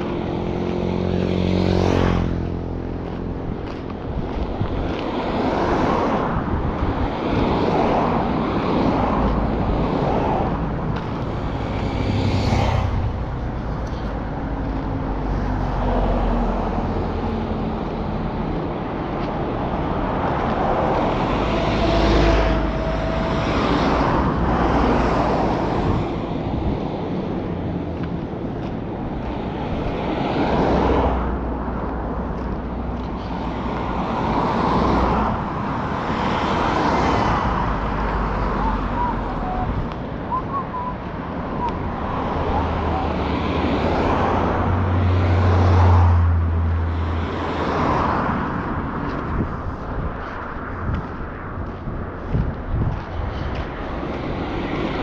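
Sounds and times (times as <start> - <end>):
traffic rumble: 0.0 - 55.0
vehicles passing: 0.0 - 55.0.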